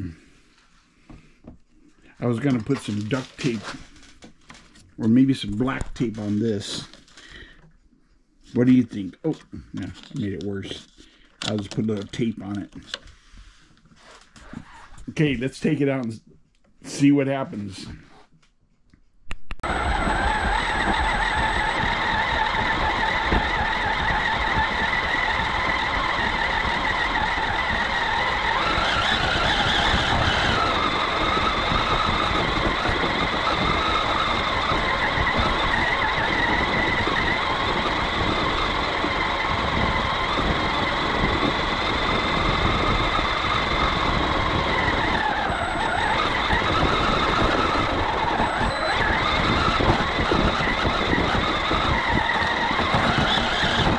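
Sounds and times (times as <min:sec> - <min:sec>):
electric motor whining: 0:19.6 - 0:53.9.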